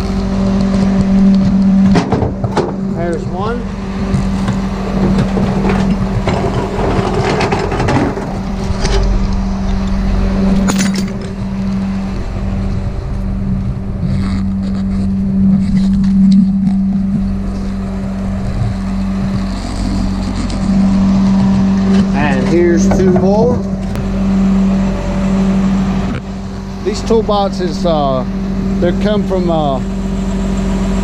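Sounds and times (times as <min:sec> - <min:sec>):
truck engine idling: 0:00.0 - 0:31.0
clanks and knocks: 0:01.4 - 0:03.0, 0:04.0 - 0:11.8, 0:18.6 - 0:24.0.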